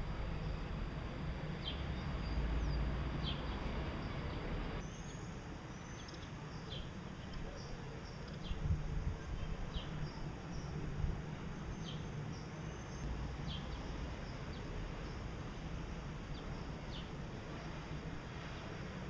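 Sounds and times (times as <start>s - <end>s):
steady low hum: 0.0s - 19.0s
finches chirping: 1.6s - 8.6s, 11.5s - 15.2s.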